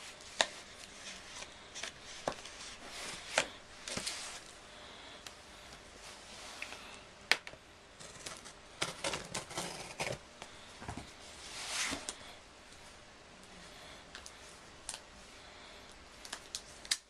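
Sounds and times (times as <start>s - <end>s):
packing material rustling: 8.0s - 10.2s.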